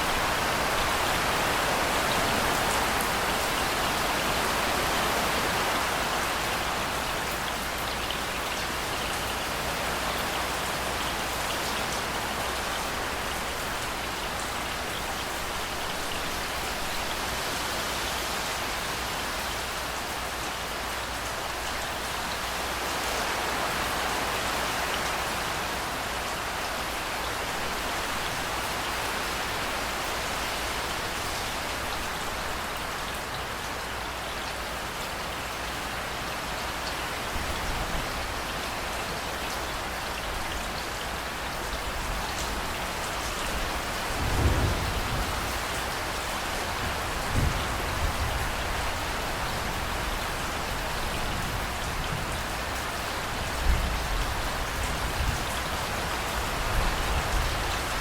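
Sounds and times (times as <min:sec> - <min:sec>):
heavy rain on hard surfaces: 0:00.0 - 0:58.0
thunder rumbles: 0:44.1 - 0:45.9.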